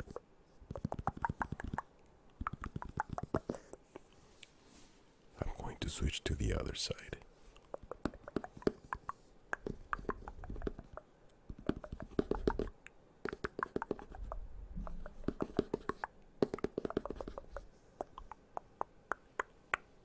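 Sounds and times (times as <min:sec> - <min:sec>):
fingers tapping on microphone: 0:00.0 - 0:03.6, 0:07.6 - 0:19.9.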